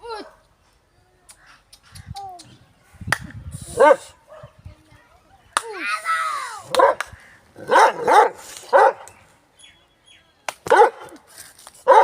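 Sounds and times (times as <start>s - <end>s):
dog barking: 3.8s - 4.5s, 6.8s - 7.0s, 7.7s - 9.0s, 10.7s - 11.0s.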